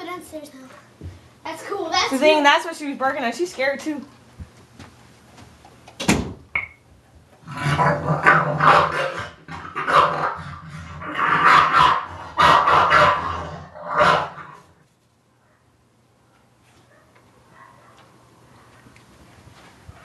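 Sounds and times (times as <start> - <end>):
dog barking: 11.4 - 13.3, 15.4 - 15.7, 16.8 - 18.8.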